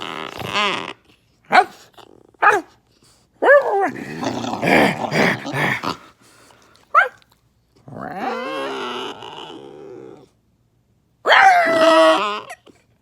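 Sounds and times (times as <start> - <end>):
dog growling: 0.0 - 2.6, 3.4 - 6.4, 7.8 - 10.4, 11.3 - 12.8
dog vocalizing: 3.5 - 6.1.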